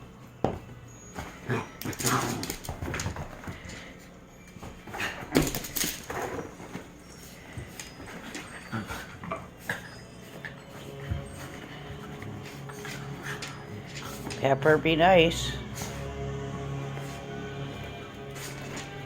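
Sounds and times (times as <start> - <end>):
excited dogs vocalising: 5.8 - 14.4.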